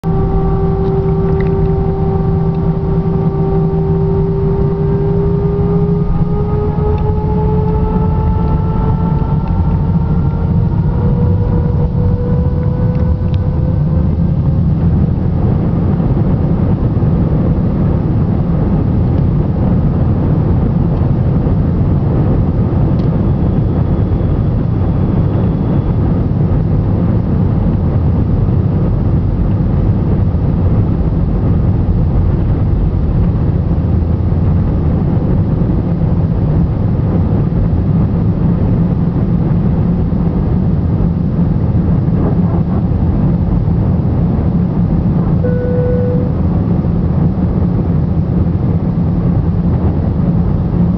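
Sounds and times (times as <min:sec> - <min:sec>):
jet engine cabin rumble: 0:00.0 - 0:50.9.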